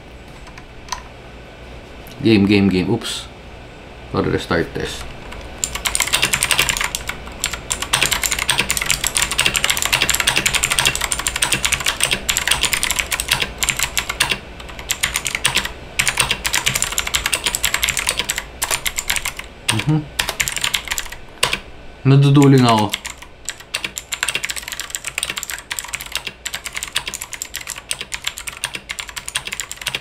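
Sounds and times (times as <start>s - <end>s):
mechanical keyboard typing: 5.3s - 21.6s, 22.4s - 30.0s.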